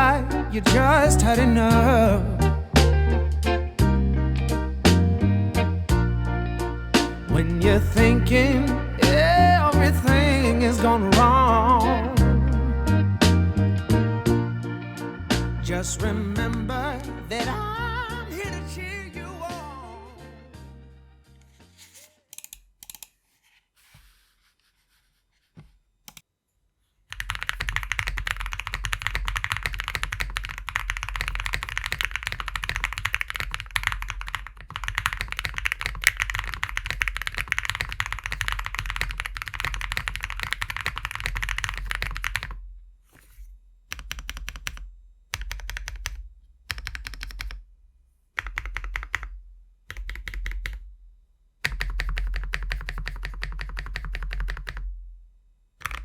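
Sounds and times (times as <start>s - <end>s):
mechanical keyboard typing: 22.4s - 23.2s, 27.1s - 42.6s, 43.9s - 44.8s, 45.4s - 47.6s, 48.4s - 49.3s, 49.9s - 50.8s, 51.6s - 54.8s.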